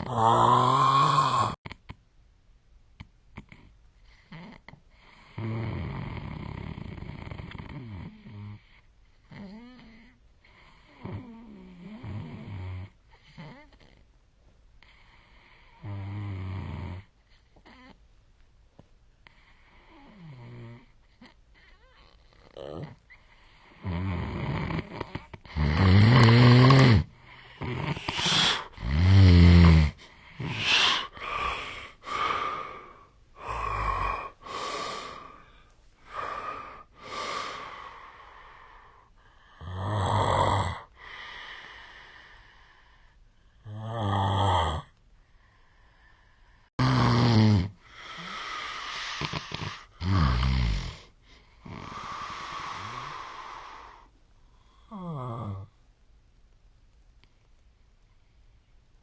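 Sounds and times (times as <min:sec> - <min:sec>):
man snoring heavily: 0:00.0 - 0:01.6, 0:05.1 - 0:08.6, 0:15.8 - 0:17.0, 0:23.6 - 0:35.5, 0:36.1 - 0:38.2, 0:39.5 - 0:41.4, 0:43.6 - 0:44.9, 0:46.8 - 0:54.1.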